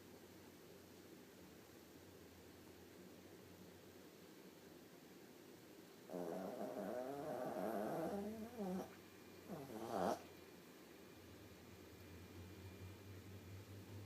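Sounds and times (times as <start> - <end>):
dog snoring: 6.1 - 10.3.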